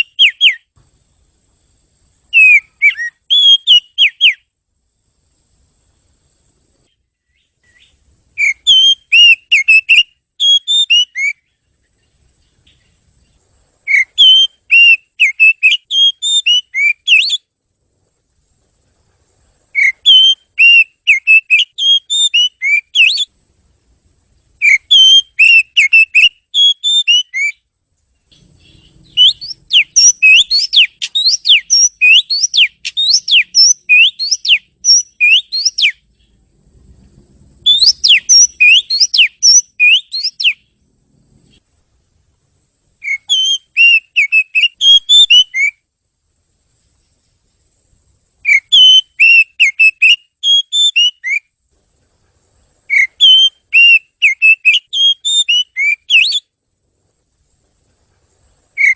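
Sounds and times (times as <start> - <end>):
bird singing whistled phrases: 0.0 - 0.7, 2.3 - 4.5, 7.2 - 11.6, 13.9 - 17.5, 19.7 - 23.3, 24.6 - 27.7, 28.6 - 36.0, 37.6 - 40.7, 43.0 - 45.8, 48.4 - 51.5, 52.9 - 56.5.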